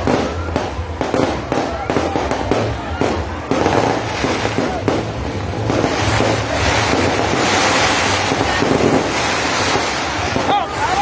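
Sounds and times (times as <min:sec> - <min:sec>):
fireworks crackling: 0:00.0 - 0:11.0.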